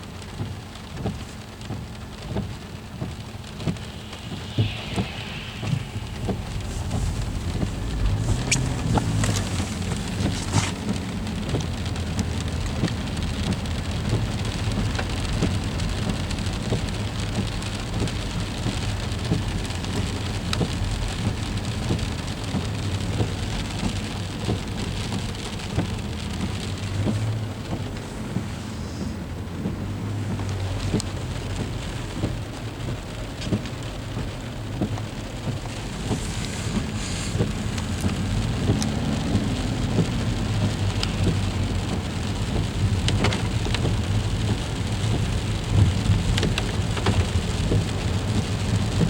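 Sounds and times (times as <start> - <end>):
low steady hum: 3.1 - 10.4
freezing rain ice ticking: 34.8 - 49.0.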